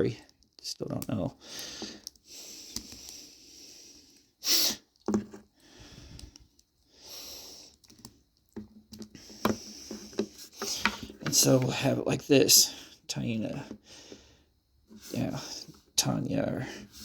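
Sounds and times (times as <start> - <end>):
person breathing: 1.4 - 4.9, 5.6 - 7.9, 9.1 - 11.3, 12.6 - 15.8.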